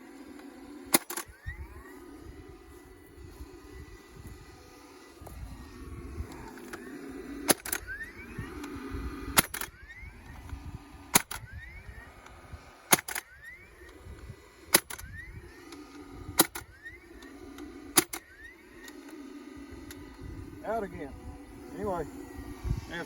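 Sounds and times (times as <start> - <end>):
short rising tool whine: 0.0 - 23.0
stapler shots: 0.8 - 1.6, 6.3 - 20.2.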